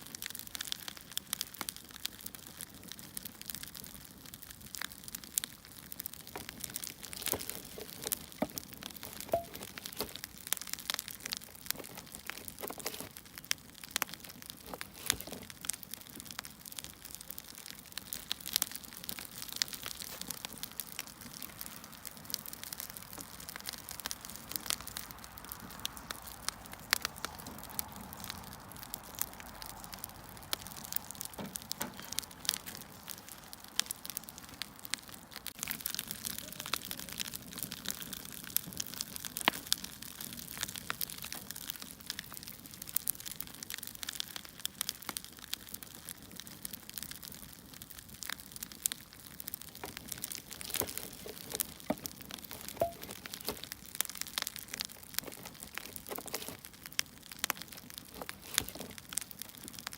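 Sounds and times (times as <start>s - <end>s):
soft steady hiss: 0.0s - 45.2s
firewood crackling and popping: 0.0s - 59.9s.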